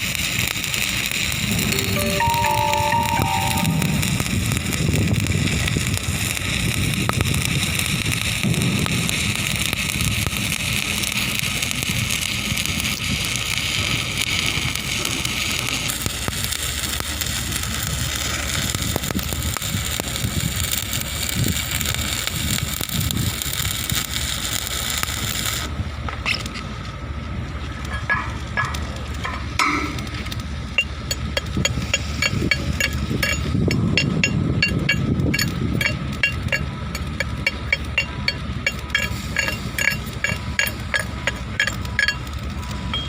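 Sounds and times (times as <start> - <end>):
welding arc crackling hiss: 0.0 - 26.9, 27.6 - 42.9.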